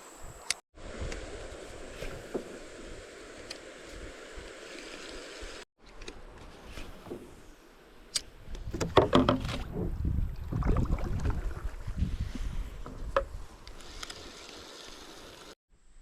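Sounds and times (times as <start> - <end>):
kayak scraping and rumbling: 8.4 - 14.4
kayak hull knocking: 8.7 - 11.0.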